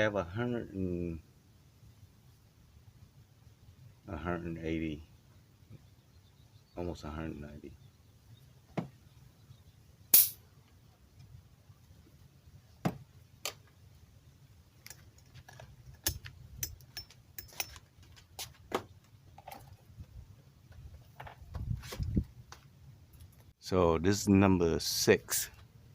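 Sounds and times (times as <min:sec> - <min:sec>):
metallic clicks of hand tools: 0:14.8 - 0:17.9.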